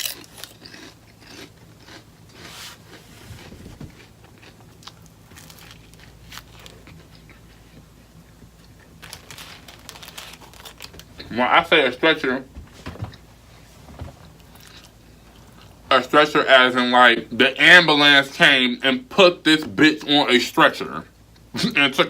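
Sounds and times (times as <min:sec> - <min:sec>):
person chewing and crunching food: 0:00.0 - 0:11.5, 0:13.1 - 0:16.1.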